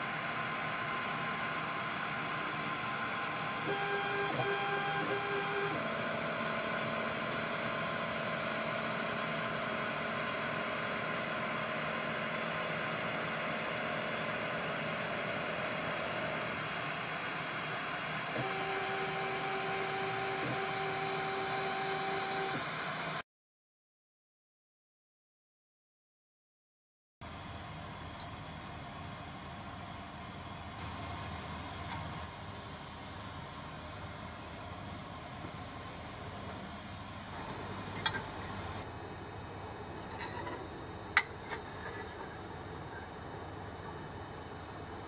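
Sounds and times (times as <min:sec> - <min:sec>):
stepper motors whining: 0:02.9 - 0:08.0, 0:18.2 - 0:23.2.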